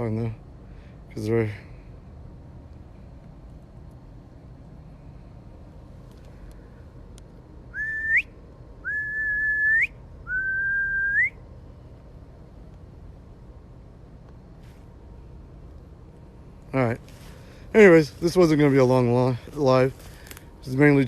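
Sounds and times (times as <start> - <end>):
whistled notes: 7.7 - 11.4.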